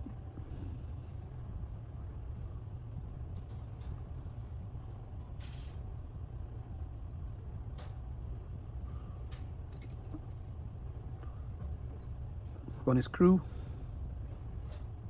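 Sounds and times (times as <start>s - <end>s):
low background hum: 0.0s - 15.0s
small metal tools clicking: 9.7s - 10.2s.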